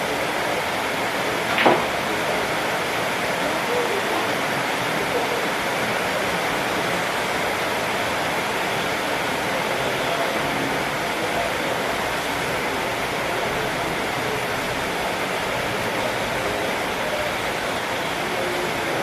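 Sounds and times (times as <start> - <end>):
faint murmured voices: 0.0 - 19.0.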